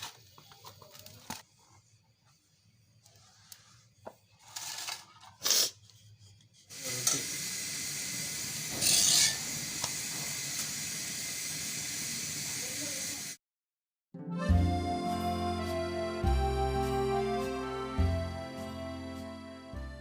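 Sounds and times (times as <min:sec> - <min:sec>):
steady hiss: 0:06.6 - 0:13.4.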